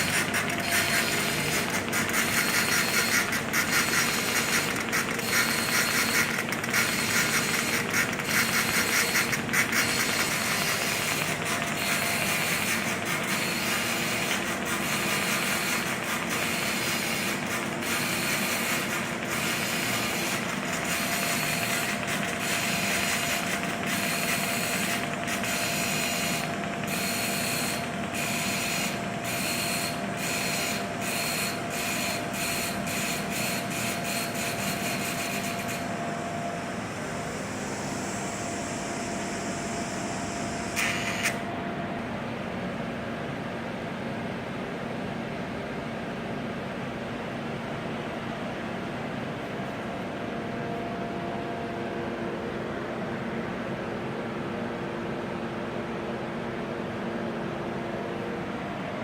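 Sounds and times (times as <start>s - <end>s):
welding arc buzzing: 0.0s - 36.0s, 37.4s - 41.5s.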